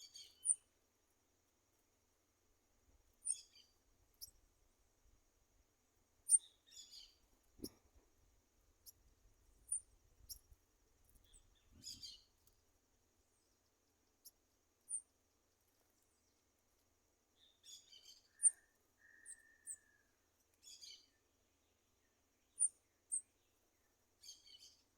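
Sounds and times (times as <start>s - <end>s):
birds chirping: 11.1s - 12.3s.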